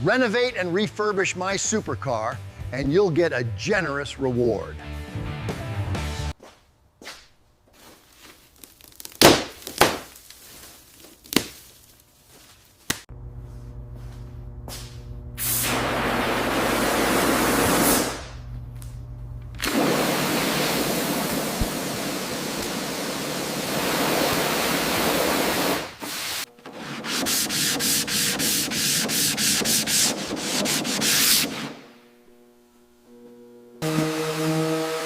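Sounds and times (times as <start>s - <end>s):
sanding car bodywork: 22.7s - 31.8s.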